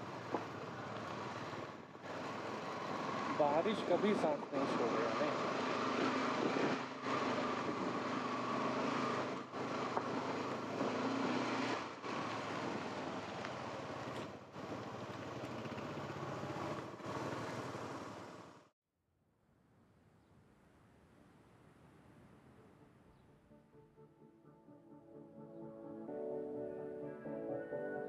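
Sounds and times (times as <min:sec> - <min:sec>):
wind and road noise: 0:00.0 - 0:18.7
motorcycle engine running: 0:12.0 - 0:18.7.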